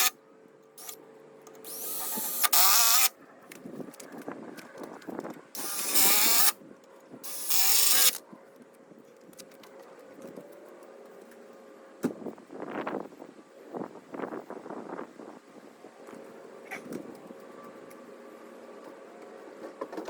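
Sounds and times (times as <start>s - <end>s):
power drill running: 1.6s - 3.1s, 5.6s - 6.6s, 7.3s - 8.2s.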